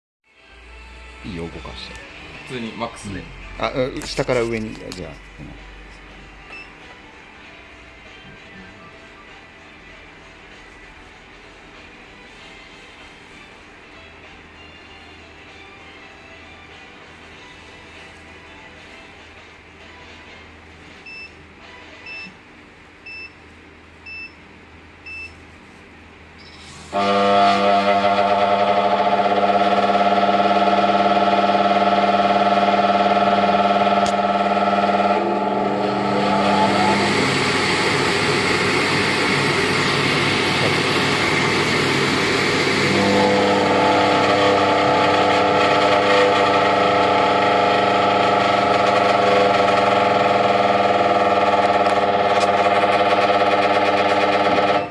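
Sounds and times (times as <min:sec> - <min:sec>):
machine mechanical drone: 0:26.4 - 0:54.9.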